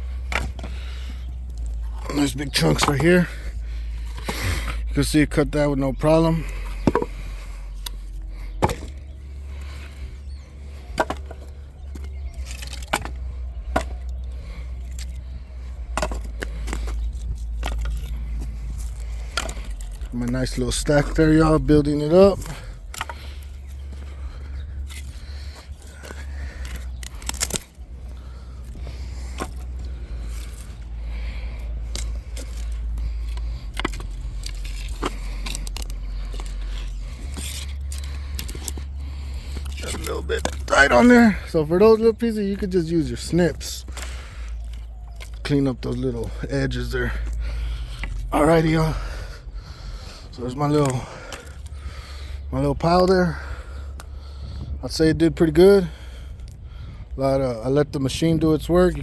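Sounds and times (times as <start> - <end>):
steady low rumble: 0.0 - 59.0
firewood chunks knocking together: 0.2 - 3.3, 6.4 - 7.4, 8.6 - 9.0, 10.8 - 15.1, 15.8 - 18.2, 24.9 - 41.3.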